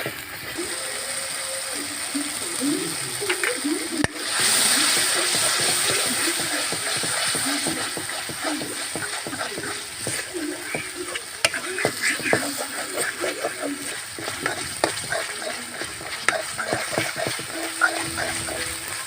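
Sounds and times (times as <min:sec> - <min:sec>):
chicken sizzling in a pan: 0:00.0 - 0:19.0
spatula scraping pan: 0:03.4 - 0:19.0
spatula clinking against pan: 0:05.0 - 0:19.0.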